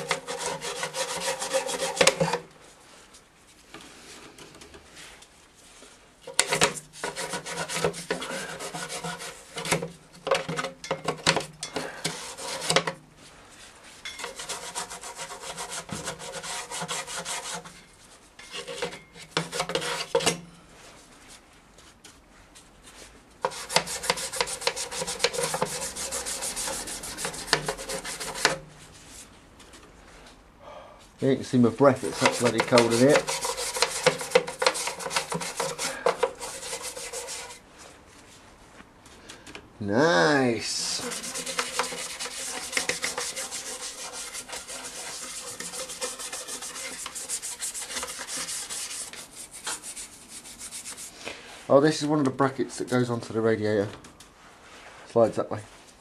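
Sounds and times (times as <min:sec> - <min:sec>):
brush scrubbing engine casing: 0:00.0 - 0:02.4, 0:06.4 - 0:09.9, 0:14.2 - 0:17.8, 0:23.4 - 0:28.6, 0:31.8 - 0:37.7, 0:40.7 - 0:51.2.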